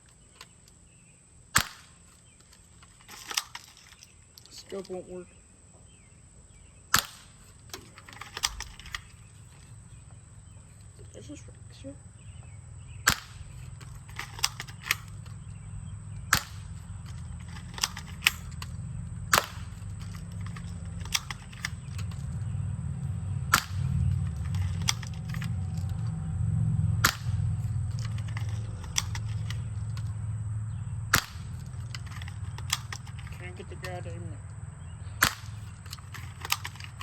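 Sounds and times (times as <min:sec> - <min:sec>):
low steady rumble: 0:00.0 - 0:37.0
airsoft gun shots: 0:01.5 - 0:02.1, 0:06.9 - 0:07.5, 0:13.0 - 0:15.3, 0:16.2 - 0:18.6, 0:19.3 - 0:22.4, 0:23.5 - 0:25.5, 0:27.0 - 0:29.8, 0:31.1 - 0:34.0, 0:35.2 - 0:37.0.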